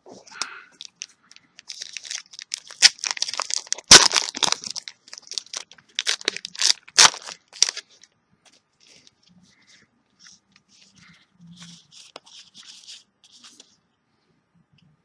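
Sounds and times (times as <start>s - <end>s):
foil wrapper crinkling: 0.8s - 8.0s
foil ripping: 1.7s - 7.8s.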